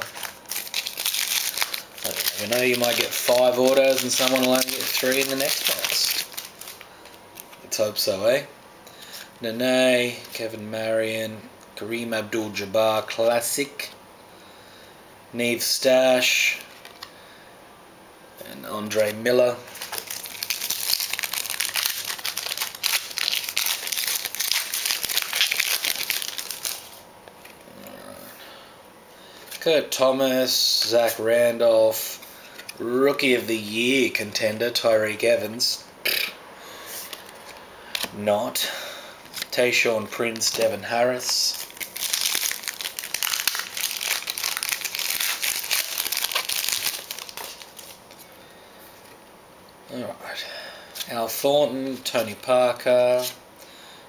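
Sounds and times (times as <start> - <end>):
foil wrapper tearing and crinkling: 0.0 - 7.6, 19.7 - 27.0, 39.2 - 48.2.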